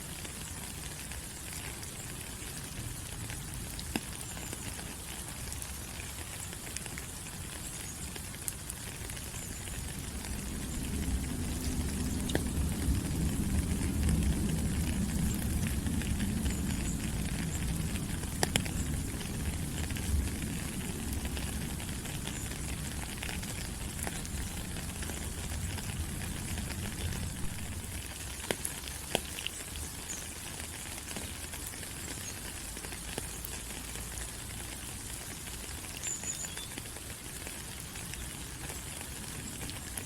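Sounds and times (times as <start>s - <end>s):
rain falling on leaves: 0.0s - 40.0s
low rumble: 9.9s - 22.8s.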